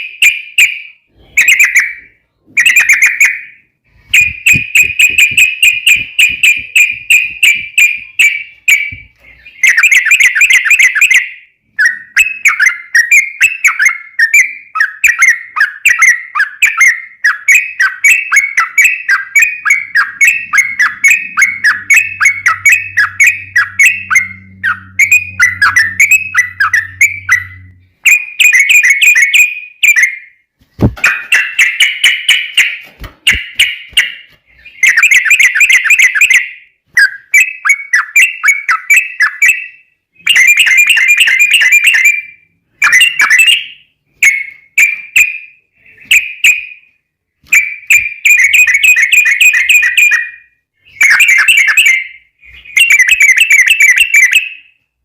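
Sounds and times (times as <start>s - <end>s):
bird bubbly chattering song: 11.8s - 29.4s.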